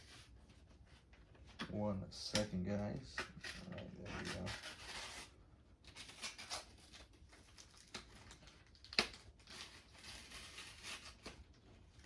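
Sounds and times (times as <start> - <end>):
plastic packaging crinkling: 5.9 - 12.0.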